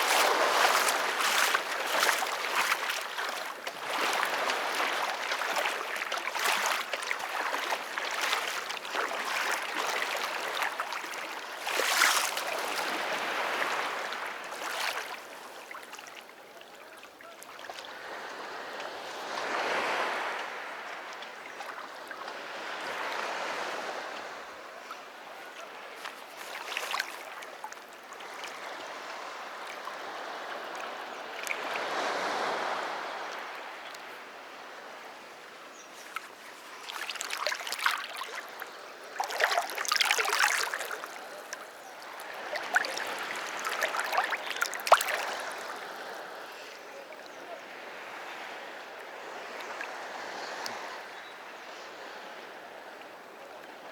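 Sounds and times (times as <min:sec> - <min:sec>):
sea surf breaking on beach: 0:00.0 - 0:15.5, 0:17.8 - 0:21.4, 0:28.3 - 0:35.1, 0:36.0 - 0:51.1.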